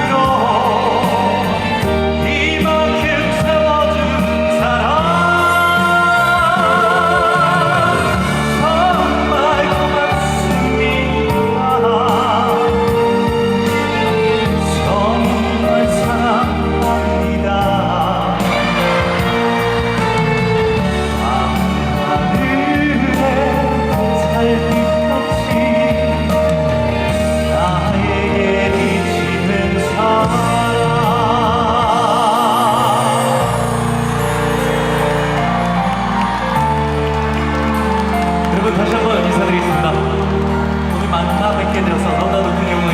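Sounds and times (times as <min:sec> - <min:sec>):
person singing with vibrato: 0:00.0 - 0:26.3
band accompaniment with bass: 0:00.0 - 0:42.9.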